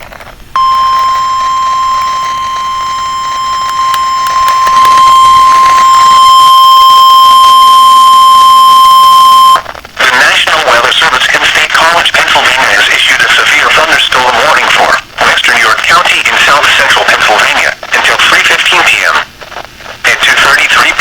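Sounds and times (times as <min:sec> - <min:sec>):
steady loud alarm tone: 0:00.6 - 0:09.6.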